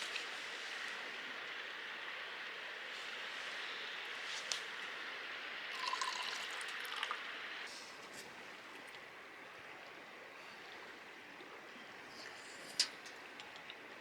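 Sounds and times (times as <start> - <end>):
faint clicks: 12.2 - 13.9.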